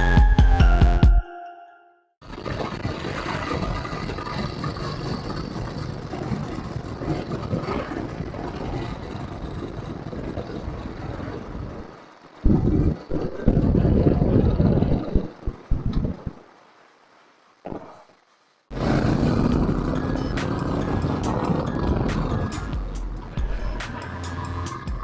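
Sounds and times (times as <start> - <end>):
electronic music with heavy beat: 0.0 - 1.6, 18.7 - 25.0
motorcycle engine running: 18.7 - 25.0.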